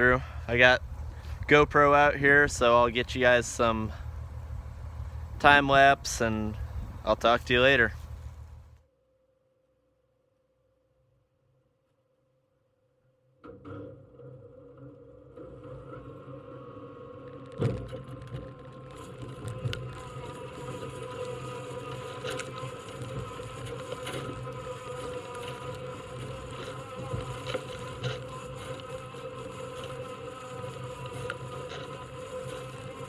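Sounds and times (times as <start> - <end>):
tractor and harvester running: 0.0 - 8.8, 18.9 - 33.0.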